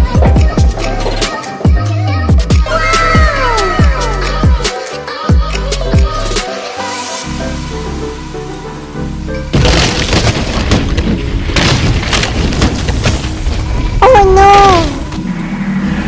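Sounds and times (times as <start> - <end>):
music with held tones: 0.0 - 9.6
high wavering cry: 2.5 - 6.8
booming crashing hits: 9.5 - 14.0.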